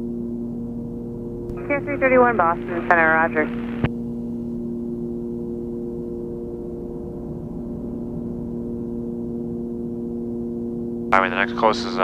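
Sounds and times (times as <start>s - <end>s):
aircraft propellers droning: 1.1s - 12.0s.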